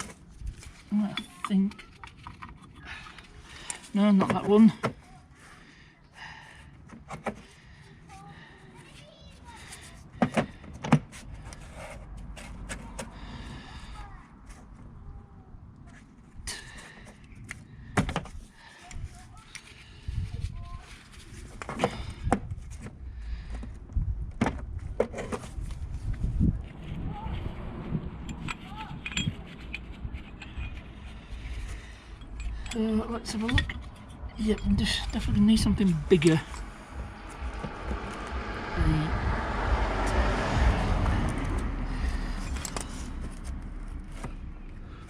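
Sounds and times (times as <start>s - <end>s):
car passing: 25.7s - 45.0s.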